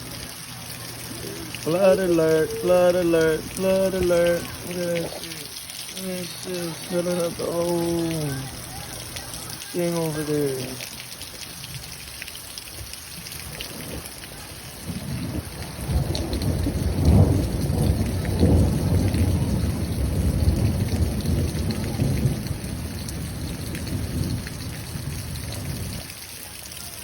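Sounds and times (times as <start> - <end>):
heavy rain: 0.0 - 27.0
thunder rolling: 13.5 - 26.0.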